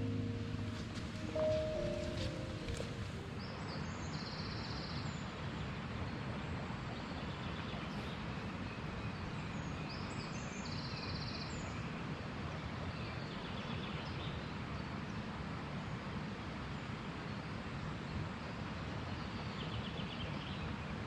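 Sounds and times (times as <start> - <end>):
outdoor background noise: 0.0 - 21.0.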